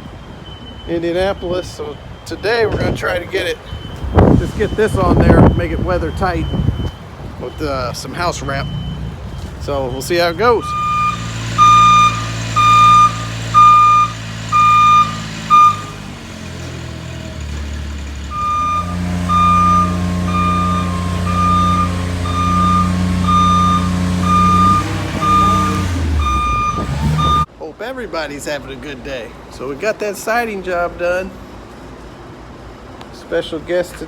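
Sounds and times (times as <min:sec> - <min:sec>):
backup alarm beeping: 0:03.6 - 0:16.2, 0:18.2 - 0:27.5
engine running: 0:08.4 - 0:27.5.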